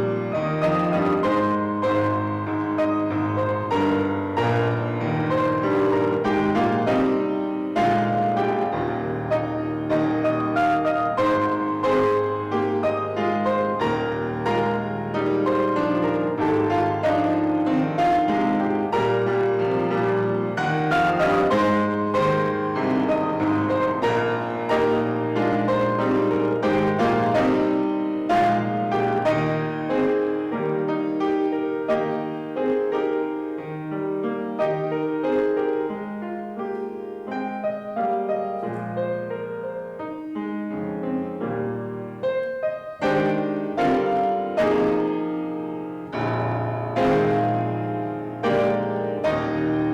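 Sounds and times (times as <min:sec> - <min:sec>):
solo piano: 0:00.0 - 0:49.9.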